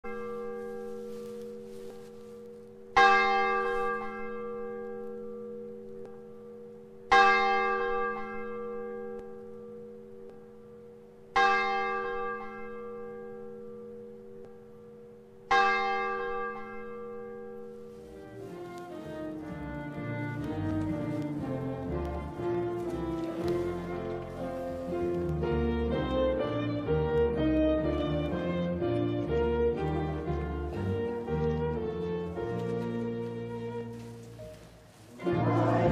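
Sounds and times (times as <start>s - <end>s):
church bell tolling: 0.0s - 18.5s.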